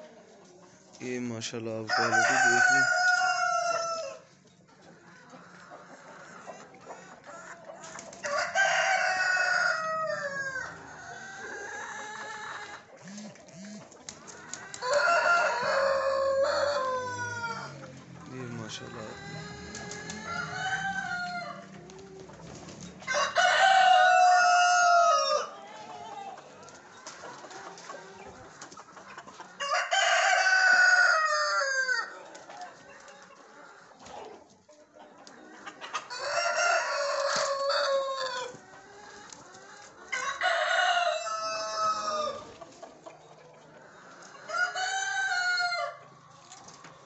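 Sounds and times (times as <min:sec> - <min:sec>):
rooster crowing: 0:01.9 - 0:04.3, 0:08.2 - 0:13.7, 0:14.6 - 0:22.2, 0:23.0 - 0:26.4, 0:29.6 - 0:32.2, 0:36.1 - 0:38.5, 0:40.1 - 0:42.5, 0:44.4 - 0:46.1.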